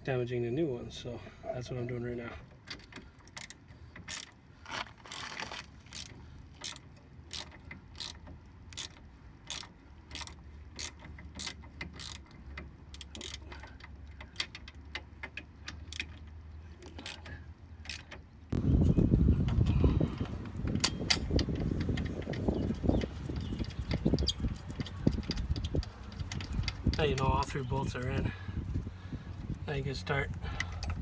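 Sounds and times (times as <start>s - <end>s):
ratchet wrench clicking: 3.3s - 4.4s, 5.9s - 12.3s, 12.9s - 13.4s, 20.8s - 28.1s.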